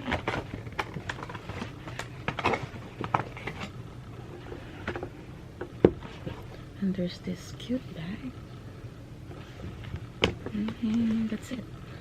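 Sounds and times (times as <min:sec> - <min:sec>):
packaging rustling: 0:00.0 - 0:05.2.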